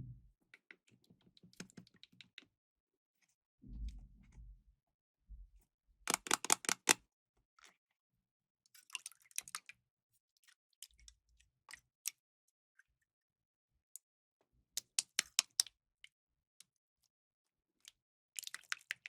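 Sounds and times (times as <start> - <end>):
soft low knocks: 0.0 - 0.3
small hard objects clicking: 6.1 - 7.0.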